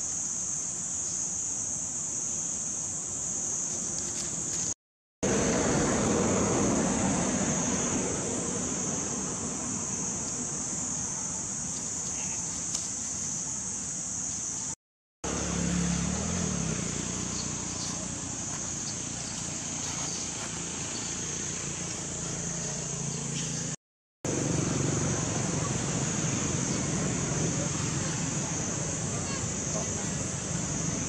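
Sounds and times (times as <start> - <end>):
constant high hiss: 0.0 - 31.0
low motor vehicle rumble: 5.2 - 12.7, 15.2 - 31.0.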